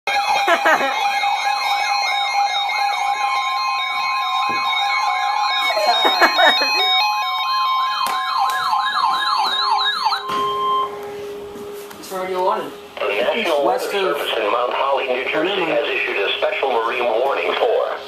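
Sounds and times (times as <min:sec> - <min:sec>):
electronic sirens yelping: 0:00.1 - 0:10.9
steady alarm tones: 0:00.1 - 0:17.0.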